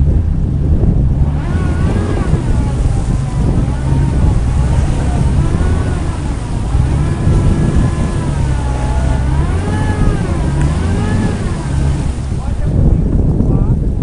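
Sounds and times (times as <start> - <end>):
off-road engine revving under load: 0.0 - 13.4.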